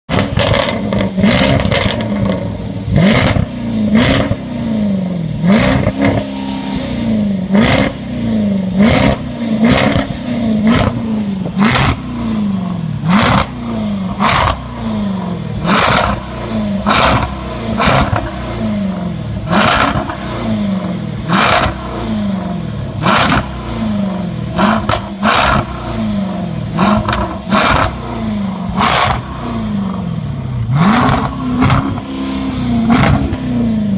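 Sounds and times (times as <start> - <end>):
exhaust pops and crackles: 0.1 - 2.4, 24.7 - 25.7
car engine revving: 0.1 - 33.9.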